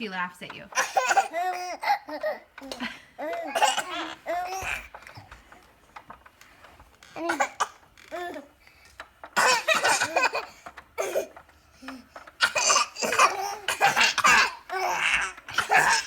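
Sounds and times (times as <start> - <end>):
baby laughing: 0.8 - 4.9, 7.2 - 8.5, 9.4 - 16.0
child coughing: 0.8 - 4.9, 7.2 - 8.4, 9.4 - 16.0.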